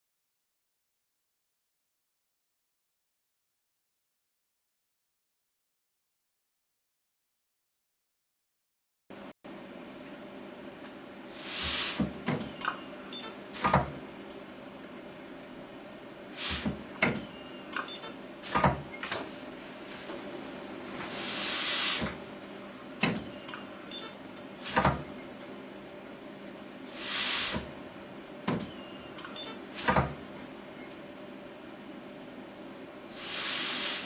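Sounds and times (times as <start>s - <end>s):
low machine hum: 9.2s - 34.0s
air exhaust hiss: 11.2s - 12.2s, 16.3s - 16.9s, 20.7s - 22.2s, 24.6s - 25.0s, 26.8s - 27.8s, 29.7s - 30.0s, 33.0s - 34.0s.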